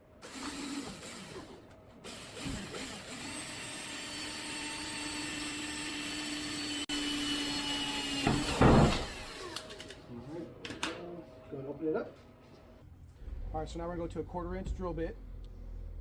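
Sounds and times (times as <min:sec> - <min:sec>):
cordless drill drilling: 0:00.2 - 0:09.8.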